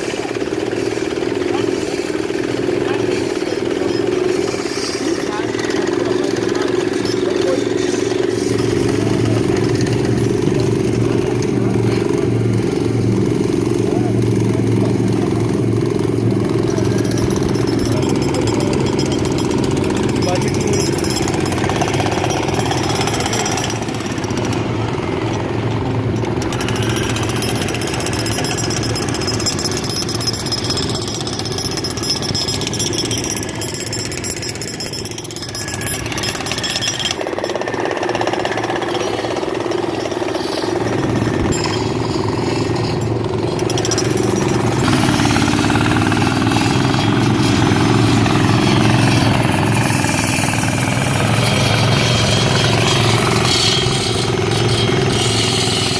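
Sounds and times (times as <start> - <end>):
motorised machine running: 0.0 - 55.9.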